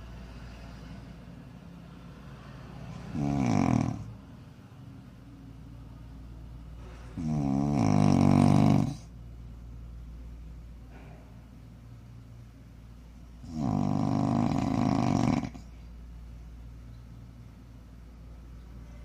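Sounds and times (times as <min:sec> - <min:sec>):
steady low hum: 0:00.0 - 0:19.0
loud snoring: 0:02.9 - 0:04.2, 0:07.1 - 0:09.1, 0:13.4 - 0:15.7.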